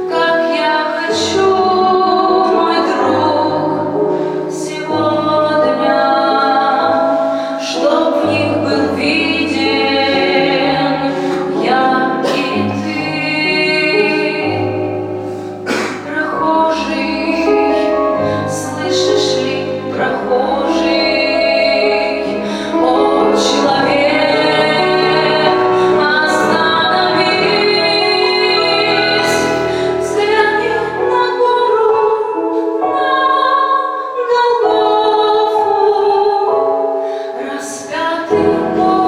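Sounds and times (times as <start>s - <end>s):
woman singing: 0.0s - 39.0s.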